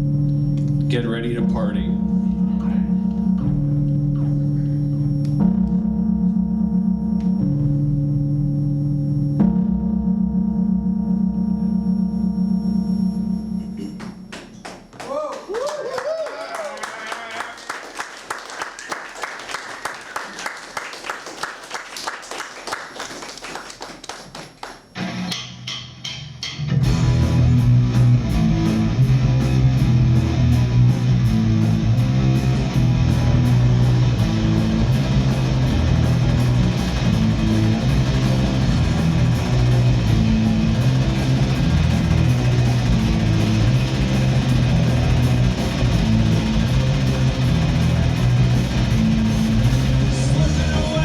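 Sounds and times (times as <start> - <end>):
rock music with electric guitar: 25.0 - 25.6, 26.6 - 51.0.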